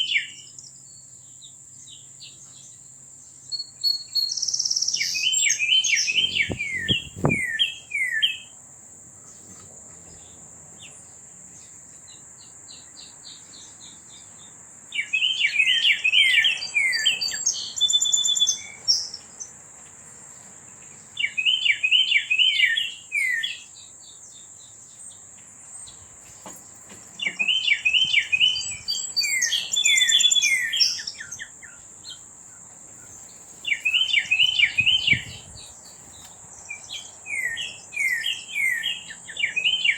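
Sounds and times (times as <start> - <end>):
songbird chirping: 0.3 - 8.5, 20.9 - 39.9
high-pitched hiss: 6.2 - 7.6.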